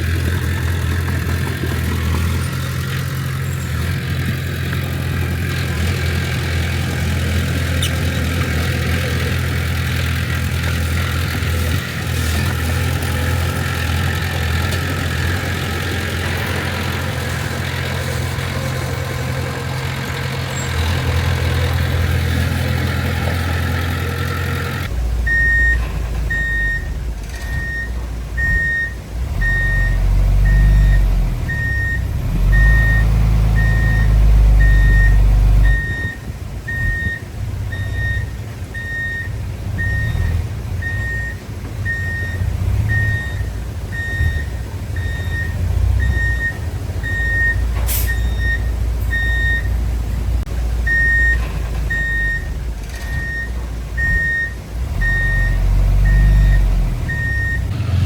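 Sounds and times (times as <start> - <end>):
heavy machinery diesel engine: 0.0 - 58.0
reversing alarm beeping: 23.9 - 49.7, 50.9 - 57.8.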